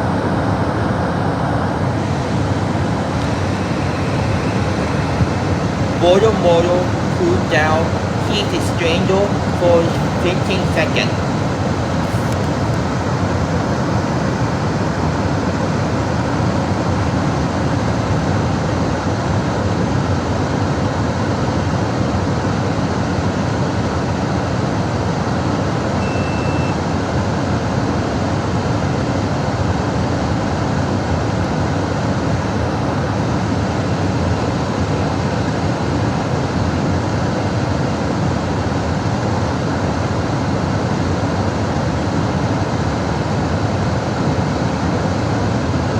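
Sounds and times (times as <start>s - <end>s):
furnace blower motor running: 0.2s - 19.0s.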